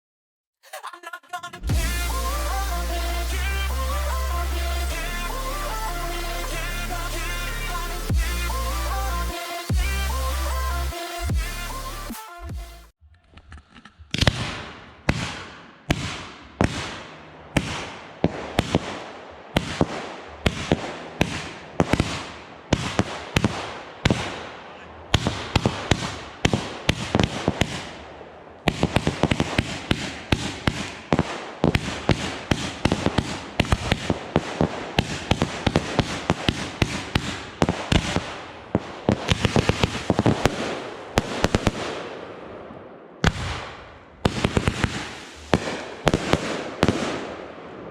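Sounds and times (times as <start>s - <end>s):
fireworks bangs and crackling: 13.8s - 47.9s.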